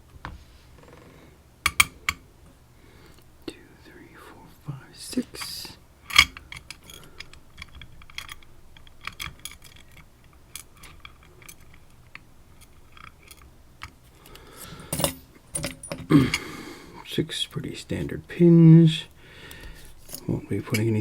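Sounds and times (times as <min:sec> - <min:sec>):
metallic clicks of lock parts: 0:01.7 - 0:02.2, 0:05.3 - 0:16.5
handling rustle: 0:19.6 - 0:21.0.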